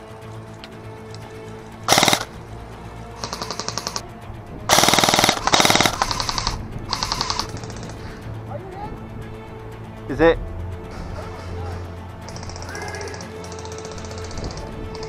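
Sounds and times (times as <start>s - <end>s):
airsoft guns firing bursts: 1.9s - 2.4s, 3.2s - 4.0s, 4.7s - 8.0s, 12.3s - 15.0s.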